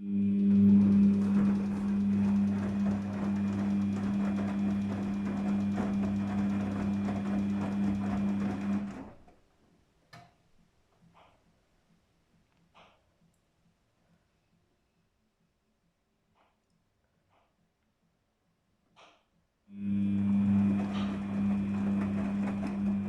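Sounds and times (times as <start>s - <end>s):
washing machine humming: 0.0s - 9.3s, 19.8s - 23.0s.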